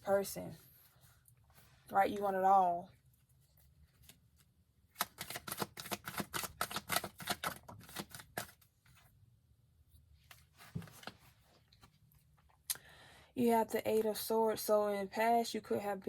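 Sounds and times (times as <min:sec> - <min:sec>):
soft card handling: 0:03.0 - 0:09.1
cards being shuffled: 0:03.9 - 0:08.6.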